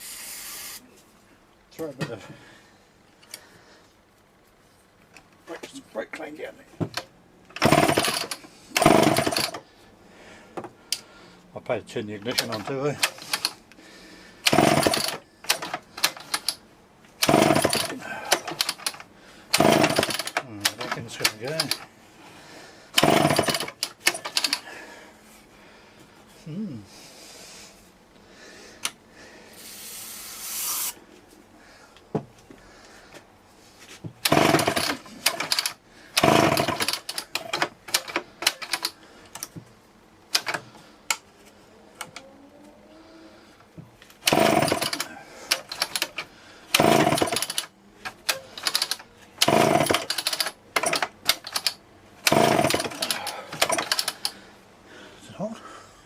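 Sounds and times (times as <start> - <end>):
short hiss: 0.0 - 0.9, 29.5 - 31.0
chainsaw engine sputtering: 7.5 - 9.6, 12.3 - 13.6, 14.4 - 16.6, 17.2 - 21.9, 22.9 - 24.6, 34.2 - 39.0, 44.2 - 54.3.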